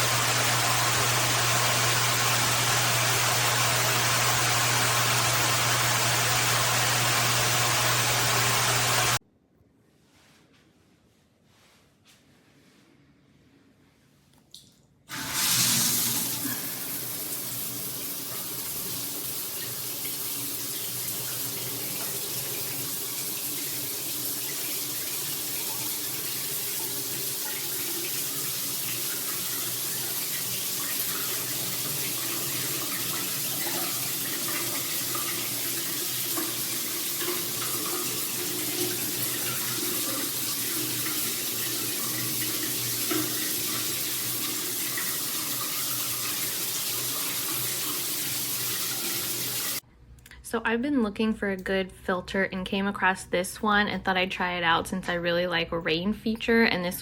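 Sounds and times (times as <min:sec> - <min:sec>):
shower head spraying water: 0:00.0 - 0:09.2, 0:15.1 - 0:49.8.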